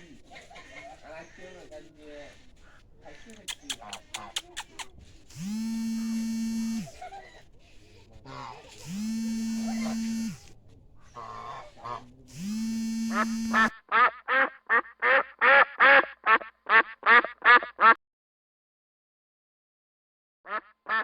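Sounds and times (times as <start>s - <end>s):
duck quacking: 3.1s - 4.9s, 8.2s - 10.3s, 11.1s - 18.0s, 20.5s - 21.0s
steady buzzing hum: 5.3s - 7.0s, 8.8s - 10.5s, 12.3s - 13.7s.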